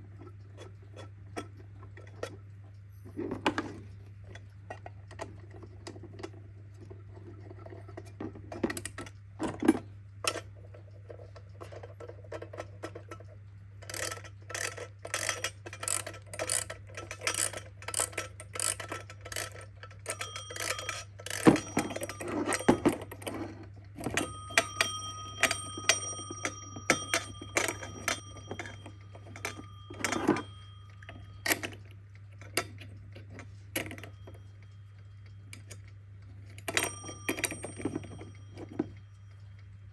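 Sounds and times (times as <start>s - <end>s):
alarm clock being handled: 0.2s - 39.8s
alarm clock bells ringing: 13.9s - 39.9s.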